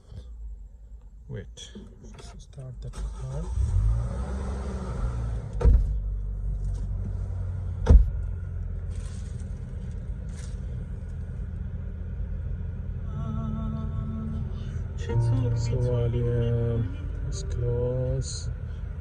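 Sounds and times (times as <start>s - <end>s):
car engine idling: 5.4s - 19.0s
sharp thump: 5.6s - 6.0s, 7.8s - 8.2s
wavering tone: 13.1s - 18.2s.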